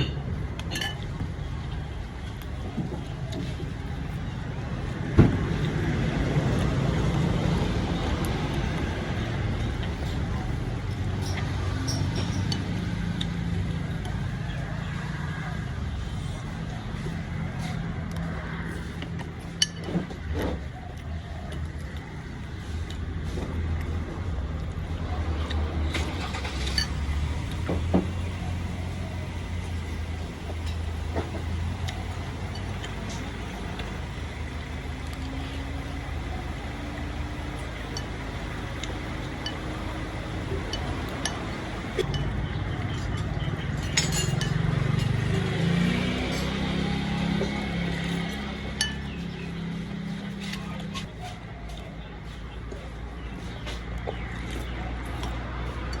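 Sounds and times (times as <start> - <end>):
light clinks of glass: 0.0 - 1.1, 43.2 - 45.3
vehicle engine humming: 0.0 - 56.0
sharp clinks: 42.0 - 45.4, 48.0 - 50.7.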